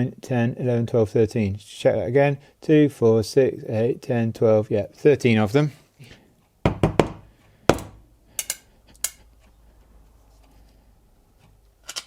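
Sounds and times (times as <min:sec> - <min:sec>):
metal parts knocking and clicking: 0:11.8 - 0:12.0.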